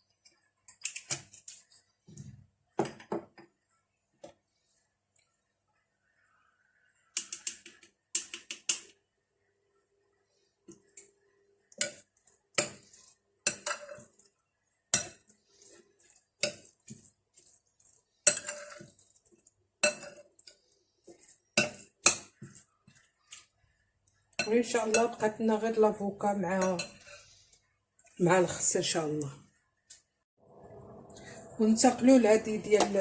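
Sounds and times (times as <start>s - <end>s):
cutlery clinking against dishes: 13.5s - 14.1s, 18.3s - 18.9s.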